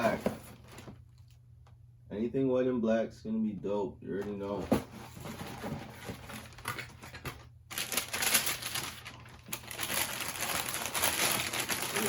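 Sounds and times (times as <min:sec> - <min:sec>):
paper crinkling and rustling: 0:04.5 - 0:12.0.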